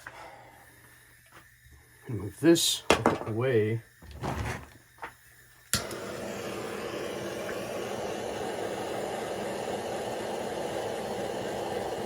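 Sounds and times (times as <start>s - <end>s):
gas torch flame hissing: 0.0s - 12.0s
gas torch lighting click: 5.0s - 12.0s.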